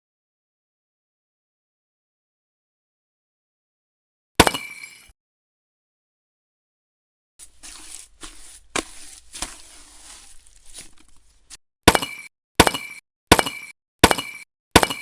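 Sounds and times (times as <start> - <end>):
wet scraping cement: 7.4 - 11.6.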